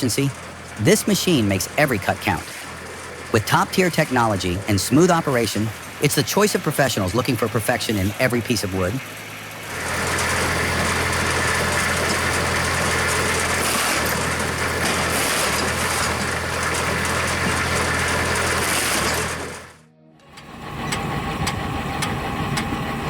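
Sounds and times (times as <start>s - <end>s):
broad mechanical hiss: 0.0s - 16.5s
engine running steadily: 0.0s - 23.0s.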